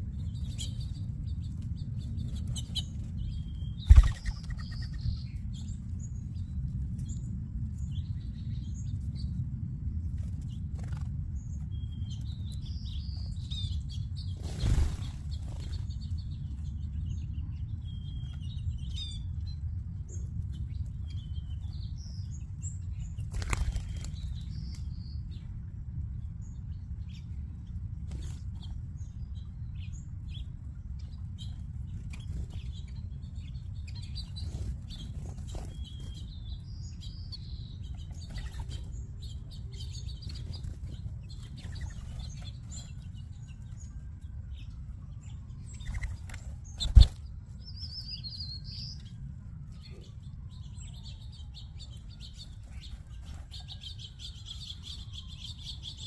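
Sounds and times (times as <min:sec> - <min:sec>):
birds chirping: 0:00.0 - 0:09.4, 0:10.2 - 0:56.0
steady low rumble: 0:00.0 - 0:53.8
wings fluttering: 0:03.8 - 0:05.0, 0:14.3 - 0:16.0, 0:23.2 - 0:24.4, 0:34.4 - 0:36.2, 0:45.7 - 0:47.3.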